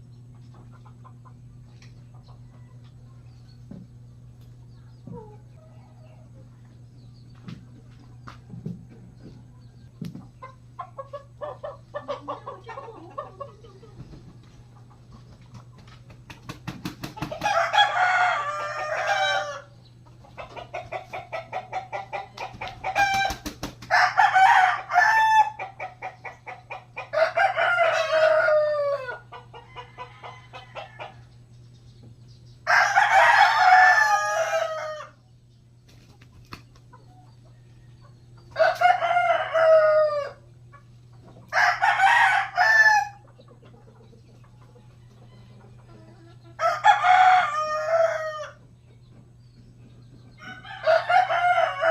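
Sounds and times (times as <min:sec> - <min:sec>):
rapid clucking: 0:10.0 - 0:17.6
rooster crowing: 0:17.4 - 0:19.7, 0:22.8 - 0:25.8, 0:27.0 - 0:31.2, 0:32.6 - 0:35.2, 0:38.6 - 0:40.4, 0:41.5 - 0:43.2, 0:46.6 - 0:48.6, 0:50.4 - 0:51.9.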